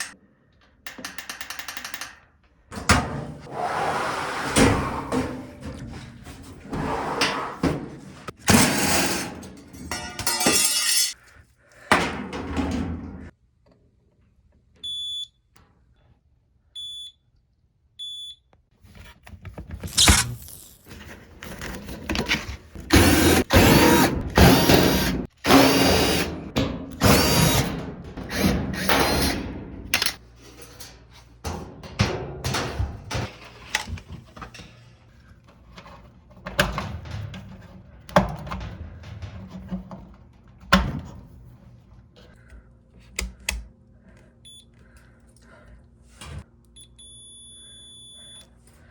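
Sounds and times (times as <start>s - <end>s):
power drill bursts: 22.9s - 26.3s, 27.0s - 27.7s.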